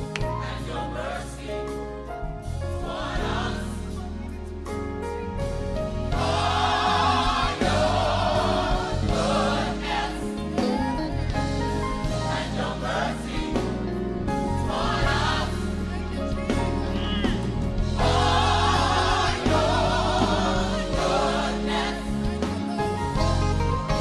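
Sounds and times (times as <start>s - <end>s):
gospel choir singing: 0.0s - 4.3s, 5.9s - 24.0s
instrumental accompaniment: 0.0s - 24.0s.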